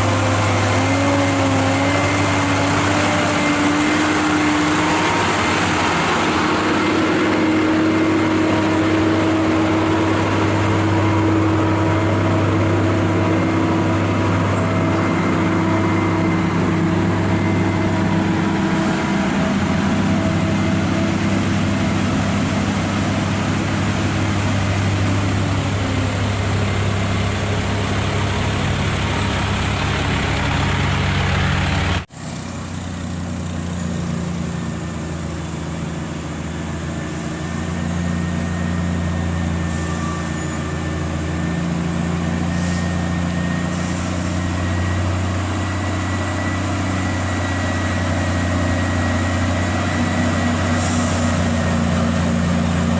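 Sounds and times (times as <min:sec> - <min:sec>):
truck engine running: 0:00.0 - 0:52.9.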